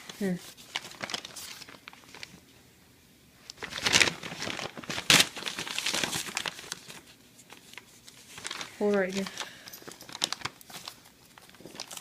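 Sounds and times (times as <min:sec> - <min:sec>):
wrapping paper crinkling and tearing: 0:00.0 - 0:02.4, 0:03.4 - 0:12.0.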